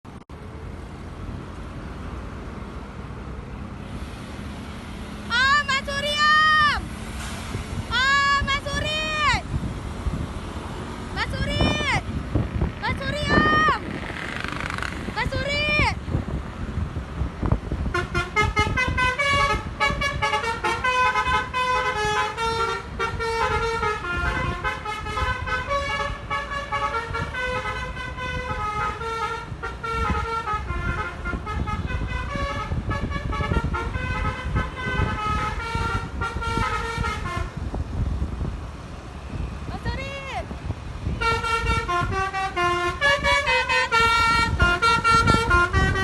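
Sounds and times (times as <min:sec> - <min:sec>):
musical air horn melody: 0:17.9 - 0:37.6, 0:41.1 - 0:46.0.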